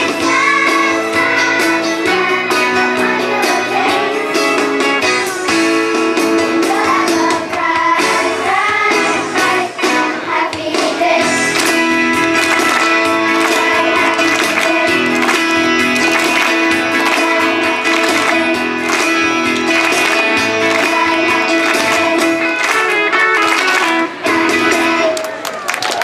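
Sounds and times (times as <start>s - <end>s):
instrumental guitar music: 11.2s - 25.1s.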